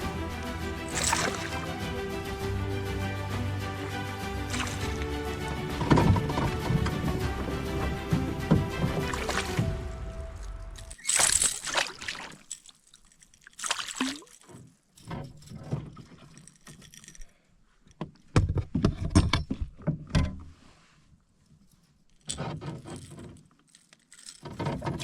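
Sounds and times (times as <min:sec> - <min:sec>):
paddle strokes splashing water: 0:00.0 - 0:14.8.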